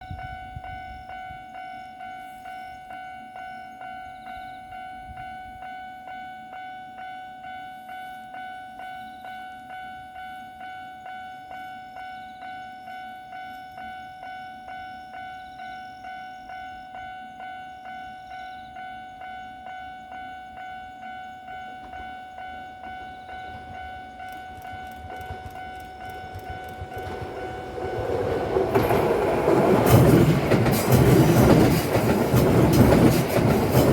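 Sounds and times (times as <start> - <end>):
level-crossing warning bell ringing: 0.0 - 33.9
electric train rumble: 9.0 - 33.9.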